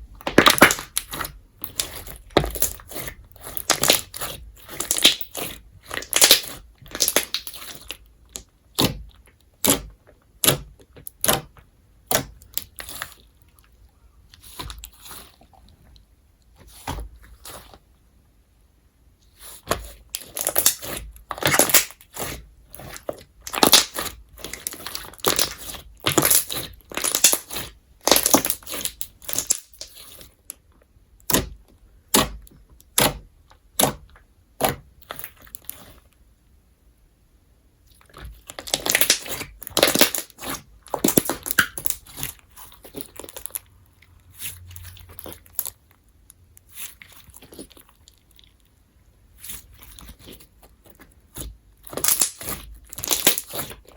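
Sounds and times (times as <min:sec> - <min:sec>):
slime crunching with beads: 0:00.1 - 0:13.3, 0:19.3 - 0:30.5, 0:38.0 - 0:53.9.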